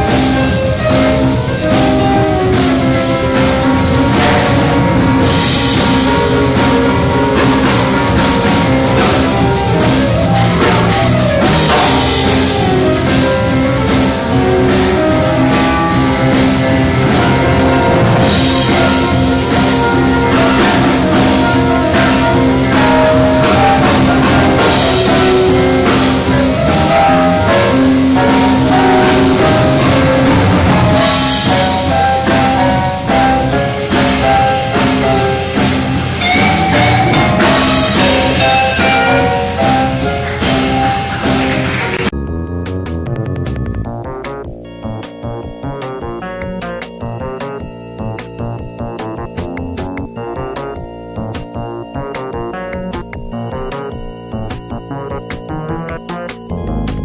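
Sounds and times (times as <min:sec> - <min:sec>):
background music with drums: 0:00.0 - 0:42.1, 0:42.7 - 0:57.0
cymbal-like swell: 0:00.0 - 0:42.1.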